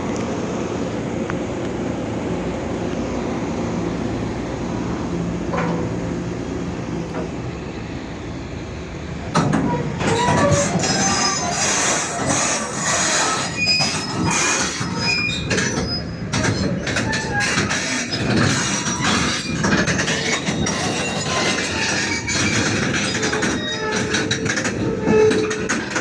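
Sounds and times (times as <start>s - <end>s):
excavator diesel engine running: 0.0s - 26.0s
steel tracks squealing and clanking: 4.1s - 7.7s, 9.2s - 26.0s.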